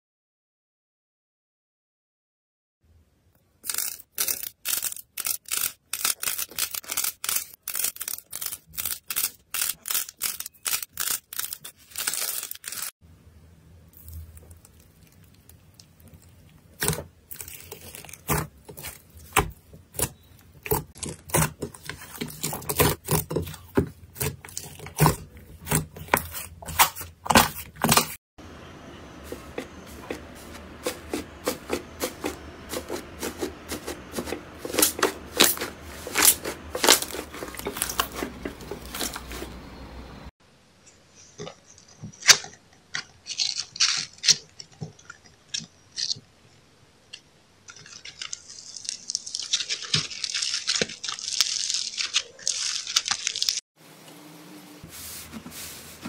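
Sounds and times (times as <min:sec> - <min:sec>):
crunchy slime crackling: 0:03.6 - 0:12.9, 0:13.9 - 0:28.2, 0:29.3 - 0:39.6, 0:42.9 - 0:46.2, 0:47.7 - 0:53.6.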